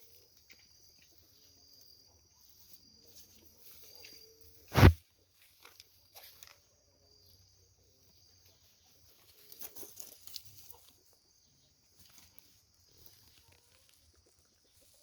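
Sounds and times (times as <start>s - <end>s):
small rustles and clicks: 9.2s - 11.0s.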